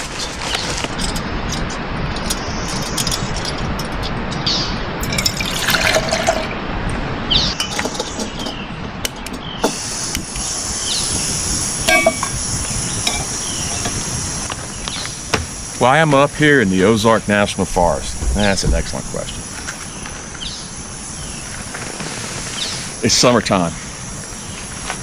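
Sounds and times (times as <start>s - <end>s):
high insect chorus: 0.0s - 25.0s
cookware clinking: 5.0s - 6.5s, 7.6s - 9.8s, 11.9s - 12.4s
water pouring into pot: 5.0s - 6.5s.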